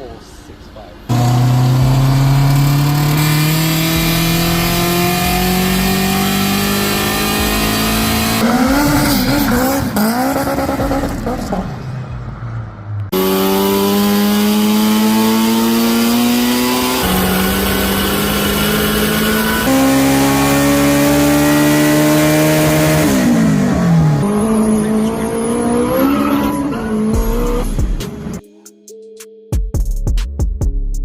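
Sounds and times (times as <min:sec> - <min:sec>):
car engine revving at full throttle: 0:01.1 - 0:11.9, 0:13.0 - 0:28.4.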